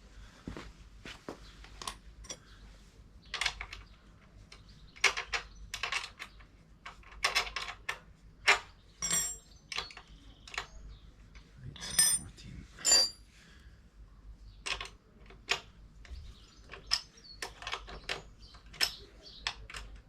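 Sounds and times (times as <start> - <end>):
ringing metal clink: 9.0 - 9.5, 11.8 - 13.2
metal tools clinking on nuts: 9.0 - 10.0, 11.7 - 13.2.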